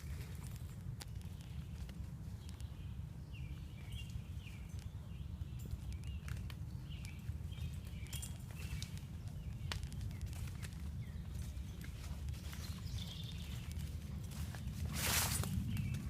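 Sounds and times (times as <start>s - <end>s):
footsteps on woodland trail: 0.0s - 16.0s
wind rumble on microphone: 0.0s - 16.0s
bird chirping: 1.0s - 16.0s
sharp crackles: 5.6s - 16.0s.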